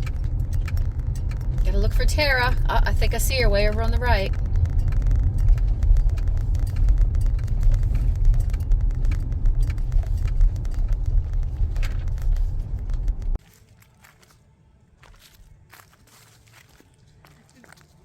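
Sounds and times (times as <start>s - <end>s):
small clicks and crackles: 0.0s - 1.7s, 4.2s - 14.1s
car road rumble: 0.0s - 13.4s.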